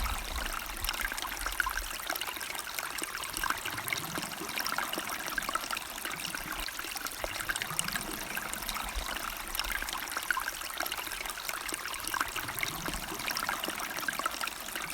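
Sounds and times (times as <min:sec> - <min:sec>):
river water flowing: 0:00.0 - 0:01.5.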